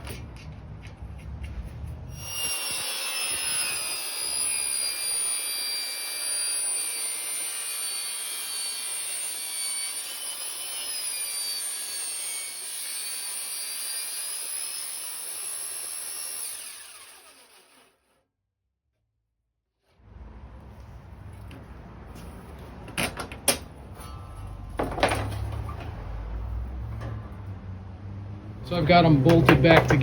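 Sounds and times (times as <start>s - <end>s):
table saw cutting sheet metal: 2.1s - 18.2s.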